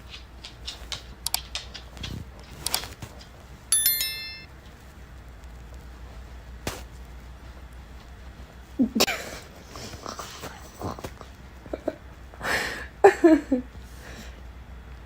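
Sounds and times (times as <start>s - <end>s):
bright ringing ding: 3.7s - 4.5s.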